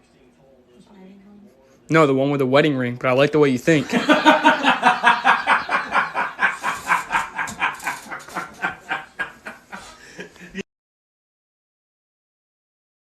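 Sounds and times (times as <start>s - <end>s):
person laughing hard: 3.8s - 10.6s.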